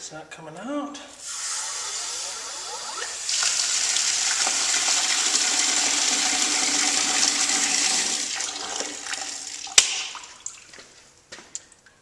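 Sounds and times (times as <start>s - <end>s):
water gushing from hydrant: 1.2s - 10.5s.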